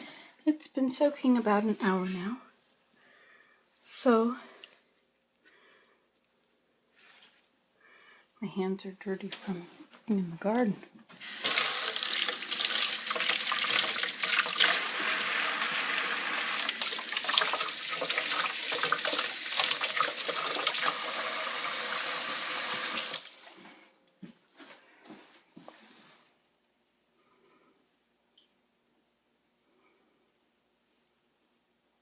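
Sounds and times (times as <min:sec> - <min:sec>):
water running from a tap: 0:11.2 - 0:23.4.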